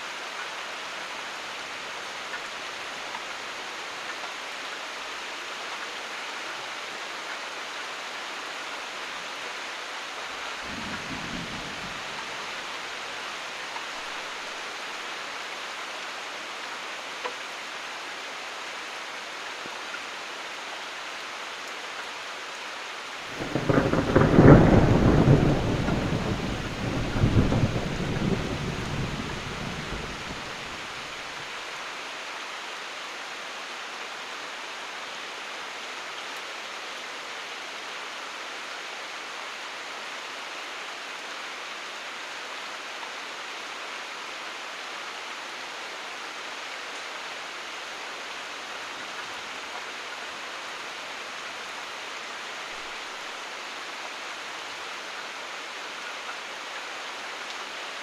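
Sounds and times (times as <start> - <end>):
heavy rain: 0.0 - 58.0
thunder rumbling: 10.7 - 12.3, 23.3 - 31.0.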